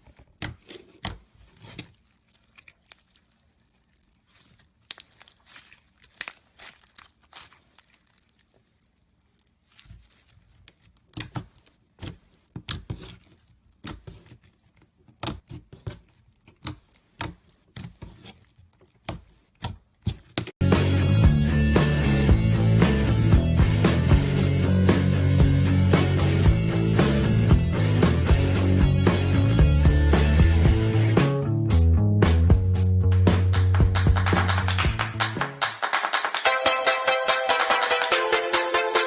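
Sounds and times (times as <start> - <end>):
slime crackling and popping: 0.1 - 20.4.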